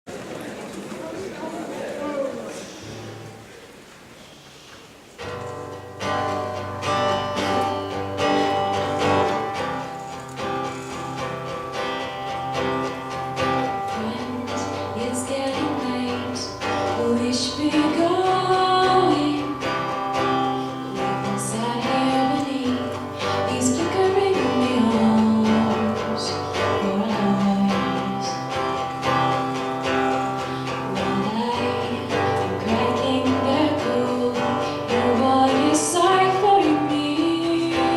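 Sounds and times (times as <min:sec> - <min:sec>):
instrumental accompaniment: 0:05.1 - 0:37.9
person singing: 0:13.1 - 0:37.9.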